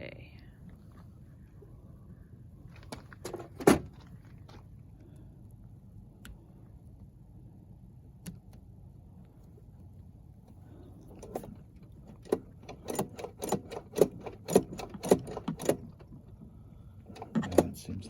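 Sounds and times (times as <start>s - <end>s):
tools clicking and knocking on metal: 11.2s - 16.1s.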